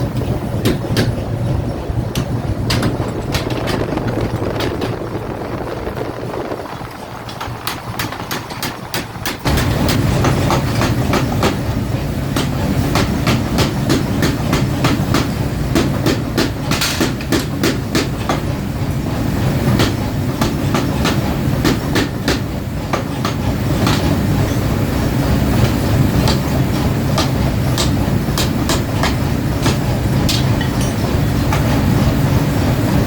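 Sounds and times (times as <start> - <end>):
machinery humming: 0.0 - 33.0
sharp metallic clicks and knocks: 7.3 - 11.6.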